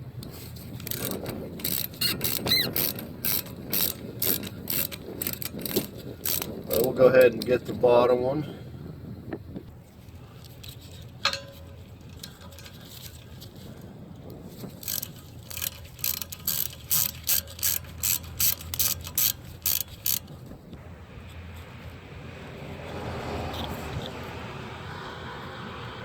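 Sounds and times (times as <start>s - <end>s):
hand ratchet clicking: 0.7s - 7.7s, 10.4s - 13.5s, 14.3s - 20.4s.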